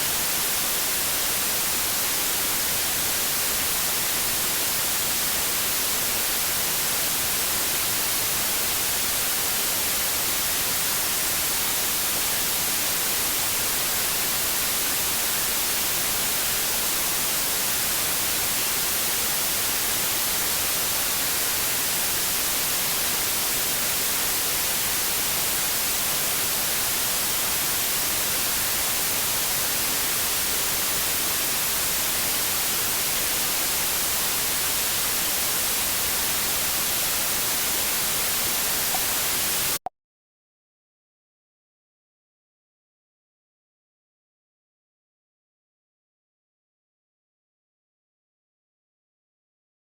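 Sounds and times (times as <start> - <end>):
television static hiss: 22.4 - 39.8.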